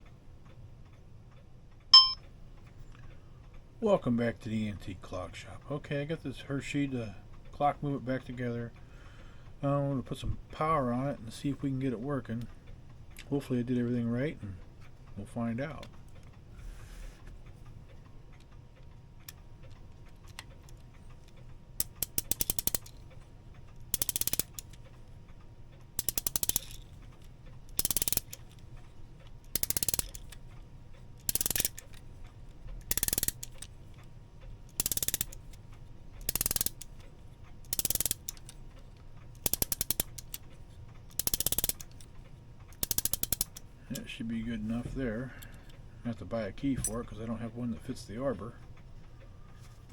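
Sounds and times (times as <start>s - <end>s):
rapid ratchet clicking of clock winding: 17.4s - 45.8s.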